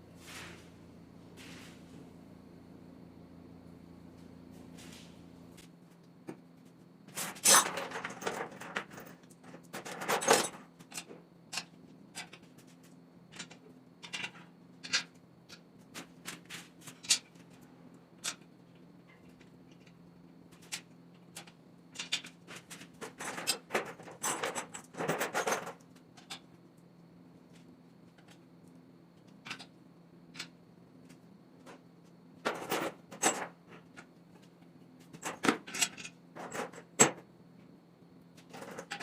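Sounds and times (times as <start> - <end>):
steady low hum: 0.0 - 9.8
metal tools and parts clinking: 7.2 - 9.2.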